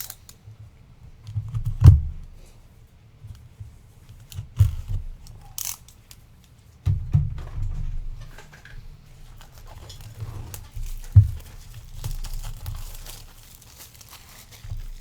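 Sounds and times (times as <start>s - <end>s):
scraping rustle: 7.8s - 15.0s.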